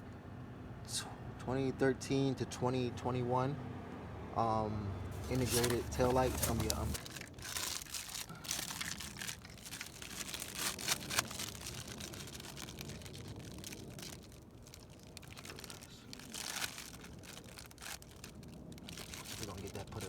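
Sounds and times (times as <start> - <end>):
crinkling and rustling handling noise: 5.1 - 20.0.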